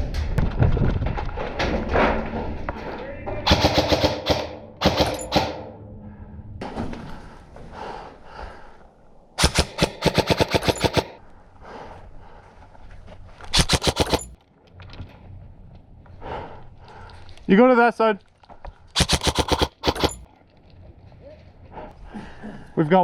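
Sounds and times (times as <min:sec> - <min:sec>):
airsoft gun full-auto bursts: 0:03.5 - 0:05.3, 0:09.4 - 0:11.2, 0:13.6 - 0:14.4, 0:19.0 - 0:20.2.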